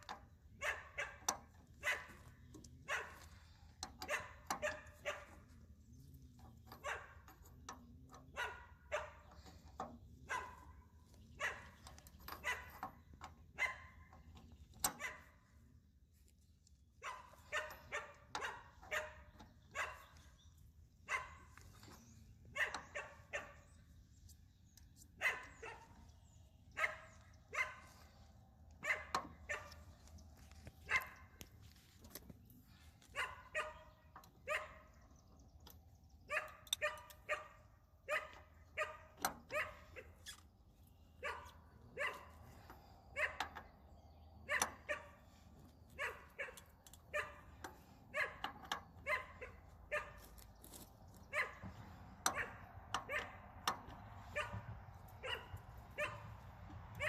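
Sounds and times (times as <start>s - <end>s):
dog barking: 0.6s - 3.4s, 4.0s - 5.4s, 6.8s - 7.2s, 8.3s - 9.4s, 10.2s - 10.8s, 11.4s - 11.8s, 12.4s - 12.9s, 13.6s - 14.1s, 14.9s - 15.3s, 17.0s - 20.2s, 21.1s - 21.6s, 22.5s - 23.7s, 25.2s - 26.0s, 26.7s - 28.0s, 28.8s - 29.8s, 30.8s - 31.3s, 33.1s - 35.0s, 36.3s - 40.2s, 41.2s - 42.4s, 43.1s - 43.6s, 44.4s - 45.2s, 46.0s - 50.3s, 51.3s - 53.5s, 54.2s - 57.0s.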